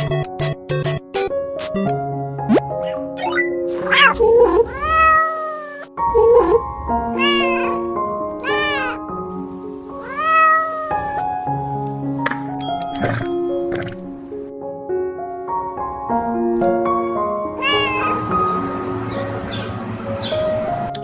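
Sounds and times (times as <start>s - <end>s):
light background music: 0.0s - 21.0s
cat meowing: 3.8s - 9.1s, 9.9s - 11.5s, 17.5s - 18.6s.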